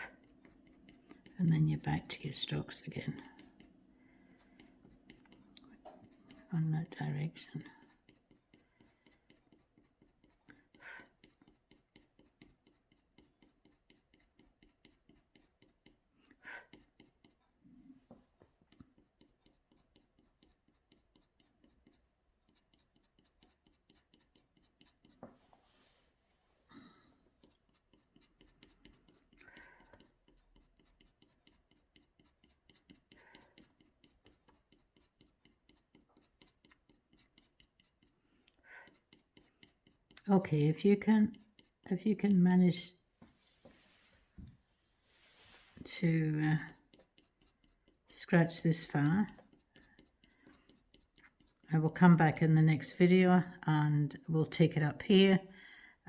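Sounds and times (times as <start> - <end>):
tool scratching a board: 7.8 - 17.6, 19.2 - 25.6
puffs of breath: 55.5 - 56.0.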